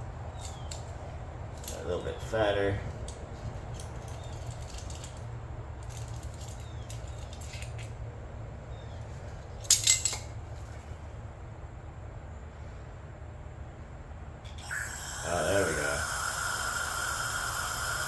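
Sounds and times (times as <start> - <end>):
steady low hum: 0.0 - 18.0
metal hand tools clinking: 3.8 - 7.9, 9.6 - 10.3.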